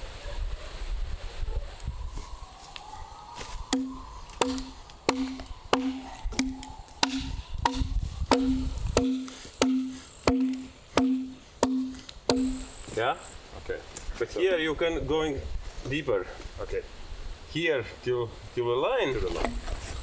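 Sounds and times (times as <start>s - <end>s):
mallet striking chisel into wood: 3.7s - 12.8s.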